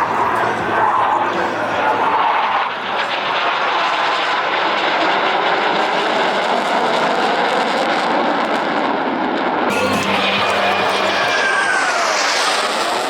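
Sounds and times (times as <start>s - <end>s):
jet engines roaring: 0.0s - 13.0s.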